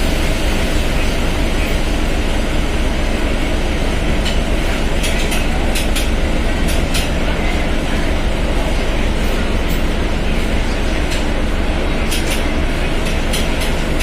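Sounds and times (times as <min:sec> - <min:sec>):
bus diesel engine droning: 0:00.0 - 0:14.0
sharp clicks and knocks: 0:05.0 - 0:07.2.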